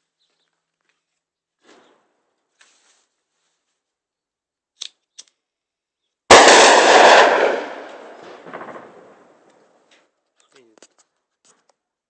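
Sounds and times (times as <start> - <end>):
loud explosion boom: 6.3 - 9.3.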